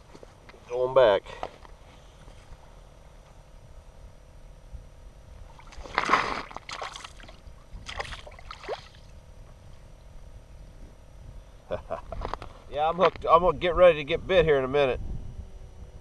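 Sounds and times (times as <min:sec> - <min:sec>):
water sloshing and splashing: 0:05.5 - 0:09.2.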